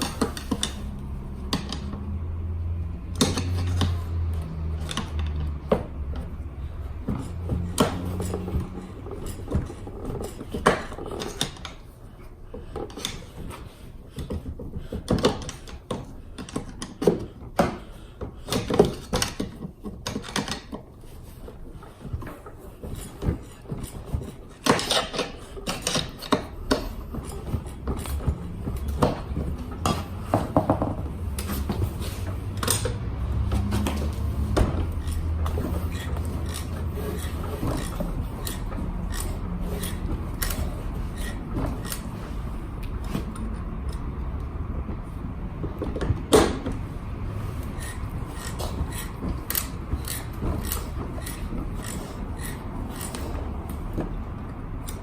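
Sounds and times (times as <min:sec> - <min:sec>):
metal tools clinking and ratcheting: 0:00.0 - 0:02.0, 0:03.1 - 0:05.5, 0:21.8 - 0:42.4, 0:47.6 - 0:54.0.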